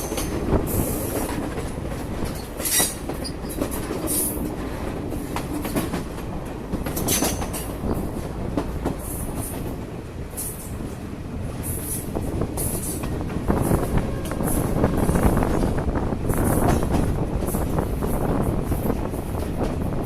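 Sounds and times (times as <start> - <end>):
wheel clicks on rail: 0.0 - 10.8
train wheels rumbling on rail: 0.0 - 20.0.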